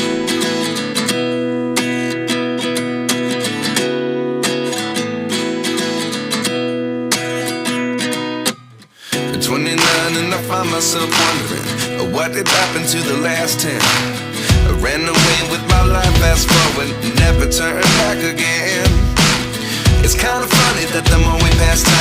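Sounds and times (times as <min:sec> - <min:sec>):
strummed acoustic guitar chords: 0:00.0 - 0:22.0.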